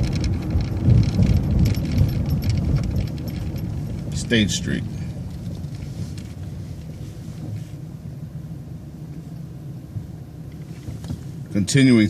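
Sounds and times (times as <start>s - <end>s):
bus engine and road rumble: 0.0s - 12.0s.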